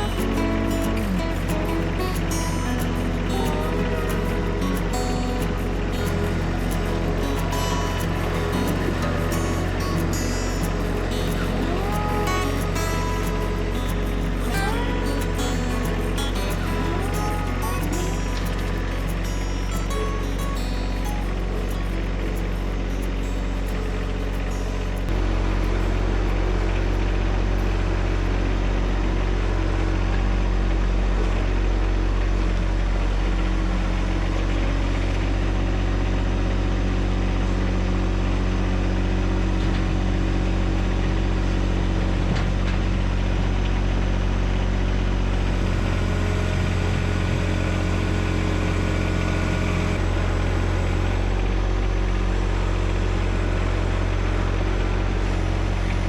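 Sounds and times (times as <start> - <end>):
tractor diesel engine running: 0.0 - 56.0.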